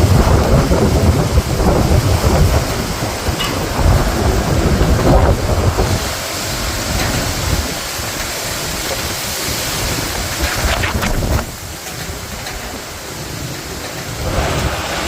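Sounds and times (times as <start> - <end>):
rain: 0.0 - 15.0
storm wind gusting: 0.0 - 15.0.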